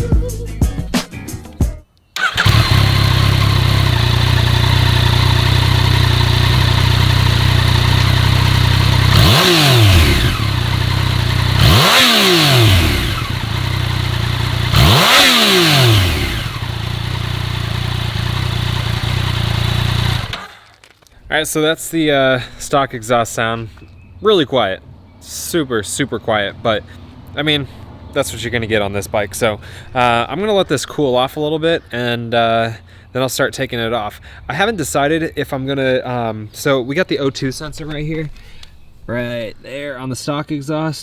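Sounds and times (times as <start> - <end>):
motorcycle engine idling and revving: 2.2 - 20.7, 23.2 - 31.2.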